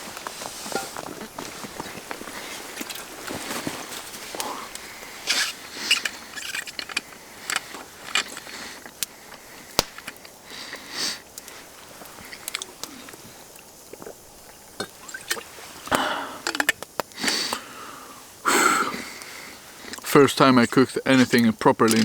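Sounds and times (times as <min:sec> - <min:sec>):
small clicks and rustles: 0:00.0 - 0:17.6
person chewing: 0:12.2 - 0:16.8
person sniffing: 0:17.2 - 0:19.2.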